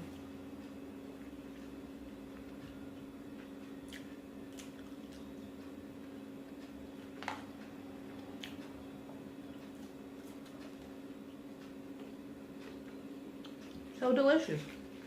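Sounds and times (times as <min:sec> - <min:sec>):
steady low hum: 0:00.0 - 0:15.0
wet chewing clicks and smacks: 0:03.4 - 0:05.4, 0:12.6 - 0:13.9.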